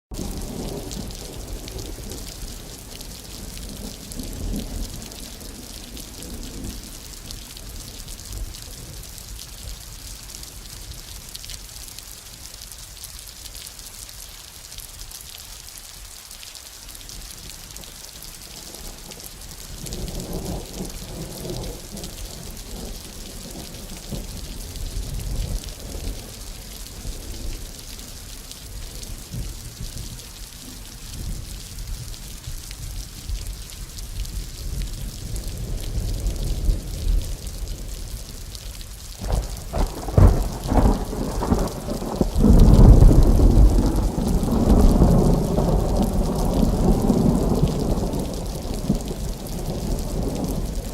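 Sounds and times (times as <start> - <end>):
steady rain: 0.1 - 50.9
thunder rumbling: 39.2 - 50.9.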